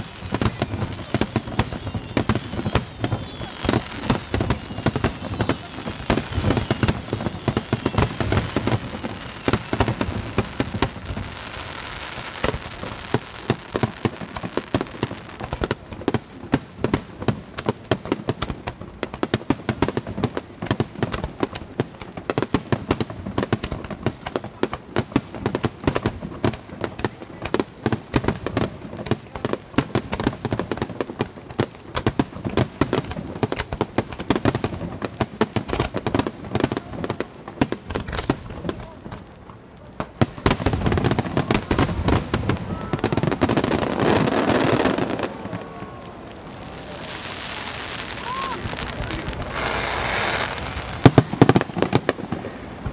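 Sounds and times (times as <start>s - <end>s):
fireworks whistling: 0.0s - 24.5s, 40.0s - 52.9s
fireworks bangs and crackles: 0.0s - 52.9s.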